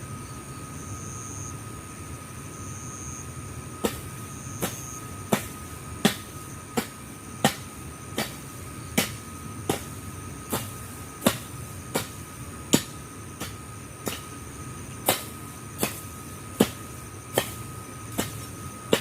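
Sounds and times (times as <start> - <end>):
hand tool chopping into soil: 3.8 - 4.0, 4.6 - 8.4, 9.0 - 14.3, 15.0 - 19.0.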